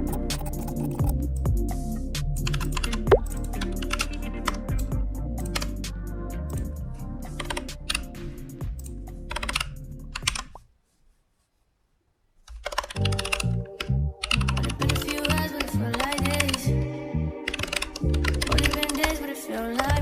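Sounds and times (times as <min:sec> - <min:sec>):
background music: 0:00.0 - 0:10.6, 0:12.9 - 0:20.0
rapid typing on keyboard: 0:00.2 - 0:01.2, 0:02.4 - 0:04.2, 0:05.5 - 0:05.8, 0:09.3 - 0:10.6, 0:12.5 - 0:16.7, 0:17.5 - 0:19.2.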